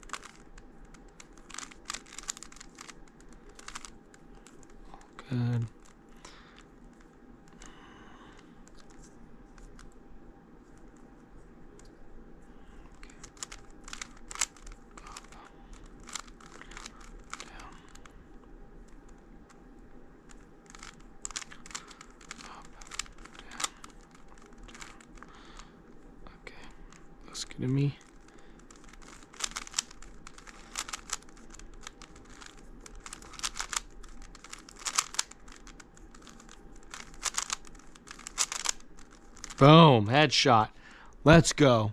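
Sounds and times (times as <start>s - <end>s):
plastic puzzle cube clicking: 0.0s - 6.3s, 12.9s - 18.1s, 20.3s - 25.6s, 28.0s - 39.6s.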